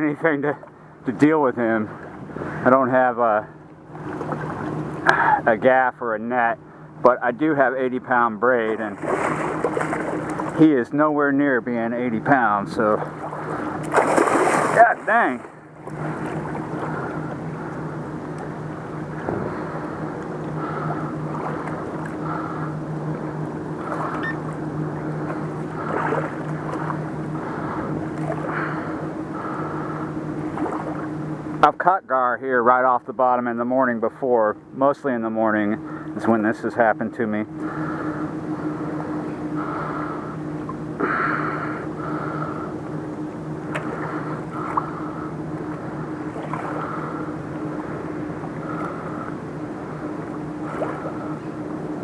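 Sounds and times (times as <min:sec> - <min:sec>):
boat engine droning: 0:00.0 - 0:52.0
water splashing: 0:08.6 - 0:10.6, 0:12.8 - 0:22.7, 0:23.8 - 0:31.2, 0:43.6 - 0:51.4.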